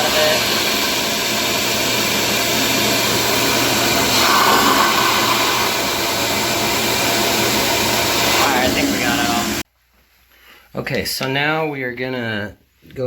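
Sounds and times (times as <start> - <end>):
shop vac sucking water: 0.0 - 9.6.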